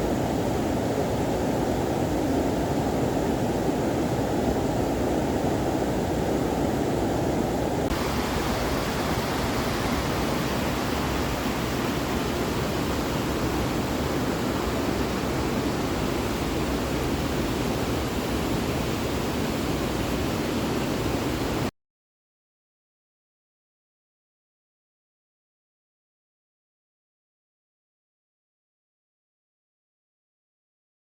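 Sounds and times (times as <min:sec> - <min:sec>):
waterfall rushing: 0:07.9 - 0:21.7.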